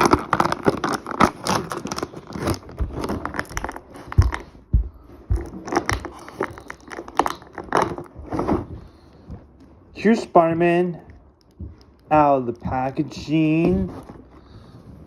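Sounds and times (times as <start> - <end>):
toy packaging crinkling and tearing: 0.0 - 4.5, 5.4 - 8.1
low thumps: 2.8 - 6.1.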